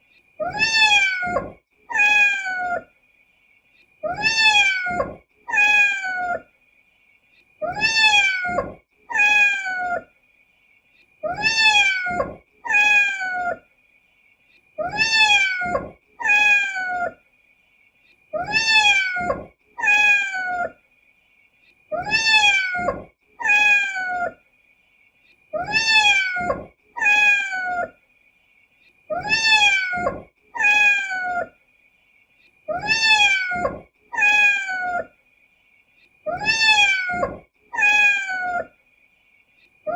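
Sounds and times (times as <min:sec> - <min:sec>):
kitten meowing: 0:00.4 - 0:02.8, 0:04.0 - 0:06.4, 0:07.6 - 0:10.0, 0:11.2 - 0:13.6, 0:14.8 - 0:17.2, 0:18.4 - 0:20.7, 0:21.9 - 0:24.4, 0:25.6 - 0:27.9, 0:29.1 - 0:31.5, 0:32.7 - 0:35.1, 0:36.3 - 0:38.7.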